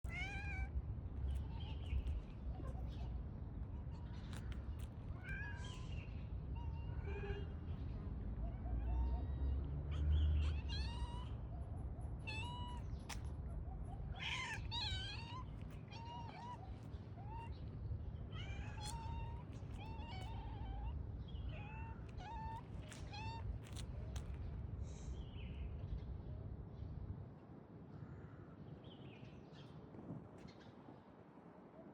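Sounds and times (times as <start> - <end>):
cat meowing: 0.0 - 3.1, 3.9 - 7.6, 10.4 - 11.3, 12.3 - 13.2, 14.1 - 17.6, 18.3 - 24.3
low background rumble: 0.0 - 27.3.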